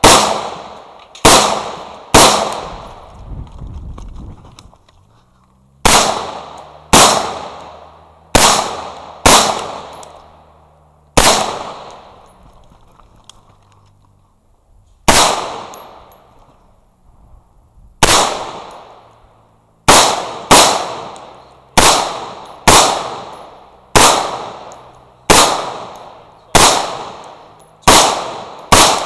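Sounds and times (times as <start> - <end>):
pistol shots with echo: 0.0 - 3.1, 5.8 - 10.6, 11.2 - 12.3, 15.1 - 16.2, 18.0 - 19.1, 19.9 - 29.0.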